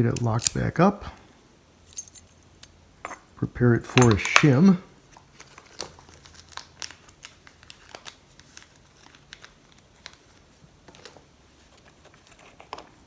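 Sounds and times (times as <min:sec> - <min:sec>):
lock parts clicking and tapping: 0:03.9 - 0:04.6.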